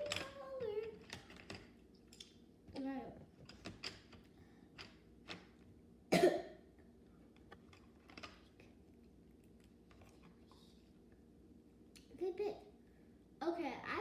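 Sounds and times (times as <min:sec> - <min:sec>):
person coughing: 0:06.1 - 0:06.5.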